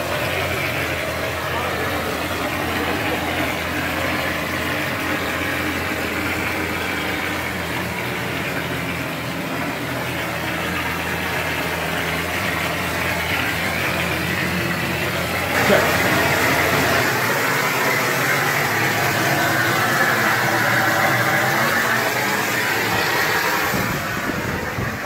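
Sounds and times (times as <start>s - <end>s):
spraying machine droning: 0.0s - 25.0s
spray hiss: 15.4s - 24.9s.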